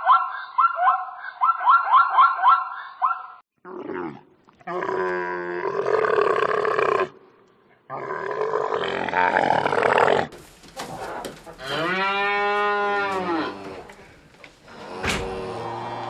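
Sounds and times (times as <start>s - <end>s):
rough animal call: 7.9s - 14.0s
cow mooing: 11.6s - 13.9s, 14.7s - 16.0s.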